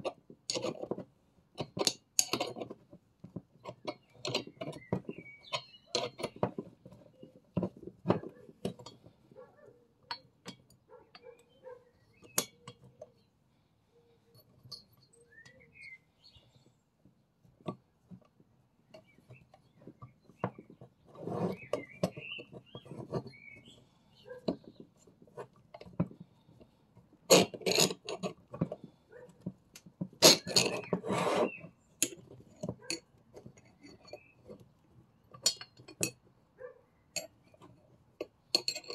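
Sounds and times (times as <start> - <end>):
metal tools clinking: 30.2 - 34.6, 38.5 - 38.9.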